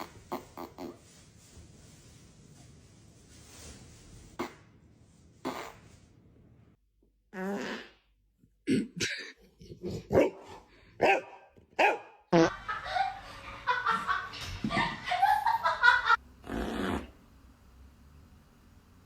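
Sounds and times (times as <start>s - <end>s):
dog barking: 10.1s - 12.2s.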